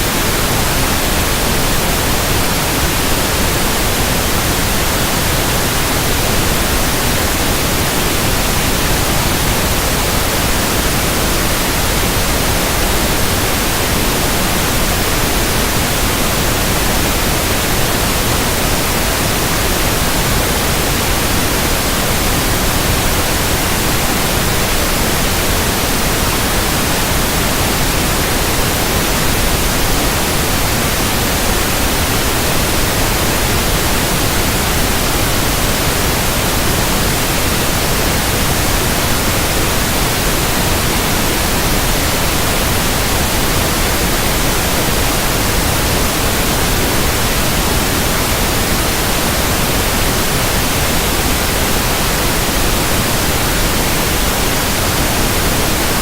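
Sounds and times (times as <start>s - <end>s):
pink noise hiss: 0.0s - 56.0s.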